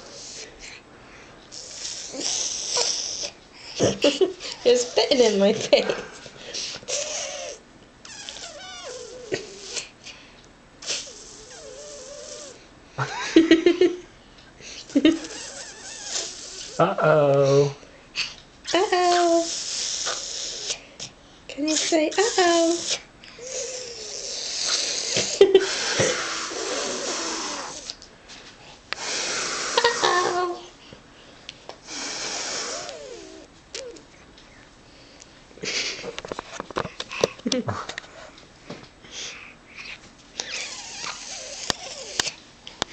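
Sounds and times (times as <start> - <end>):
baby humming: 1.5 - 5.3, 6.9 - 9.9, 10.8 - 12.7, 15.0 - 16.9, 19.1 - 20.9, 22.1 - 28.0, 31.9 - 34.1, 40.4 - 42.4
baby blowing raspberries: 1.5 - 5.4, 6.6 - 9.9, 10.8 - 12.7, 14.8 - 16.9, 19.1 - 21.1, 21.7 - 28.0, 29.0 - 30.6, 31.8 - 34.0, 40.4 - 42.4.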